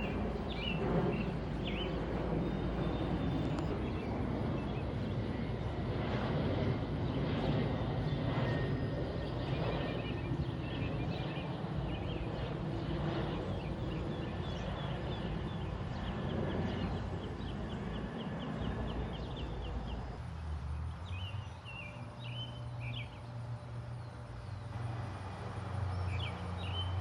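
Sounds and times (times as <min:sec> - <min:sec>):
distant aircraft rumble: 0:00.0 - 0:27.0
bird chirping: 0:00.5 - 0:04.1, 0:13.6 - 0:27.0.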